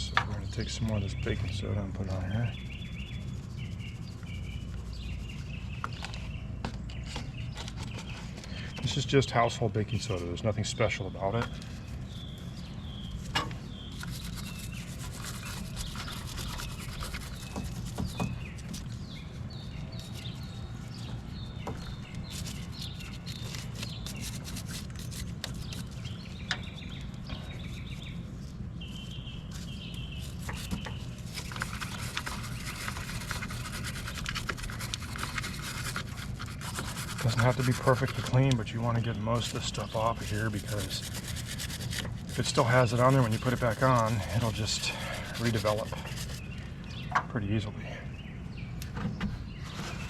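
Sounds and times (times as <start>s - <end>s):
birds chirping: 0.0s - 50.0s
brush scrubbing metal terminal: 13.1s - 20.7s, 21.3s - 26.8s, 28.8s - 46.5s.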